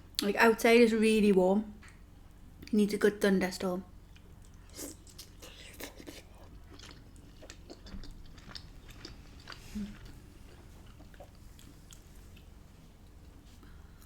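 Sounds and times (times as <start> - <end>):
person chewing food: 4.1 - 14.0.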